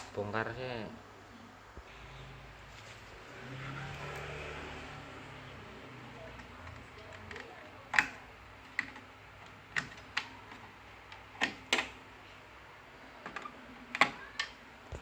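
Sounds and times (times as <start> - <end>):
sharp clicks and knocks of parts: 6.3 - 12.0, 13.2 - 15.0.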